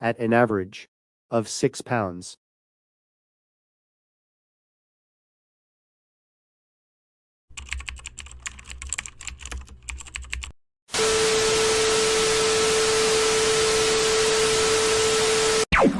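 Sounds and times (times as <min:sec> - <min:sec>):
rapid irregular clicking: 0:07.5 - 0:10.5.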